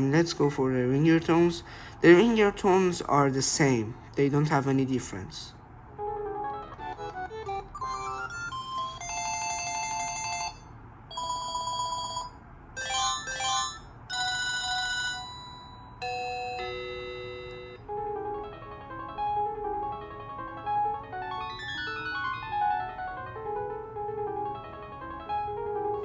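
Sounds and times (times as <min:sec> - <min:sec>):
phone ringtones: 0:06.0 - 0:18.0, 0:21.2 - 0:23.1.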